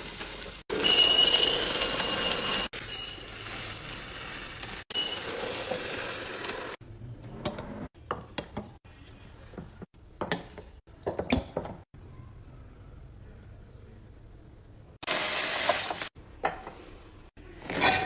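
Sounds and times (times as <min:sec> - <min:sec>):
containers clinking and knocking: 0:00.7 - 0:06.8.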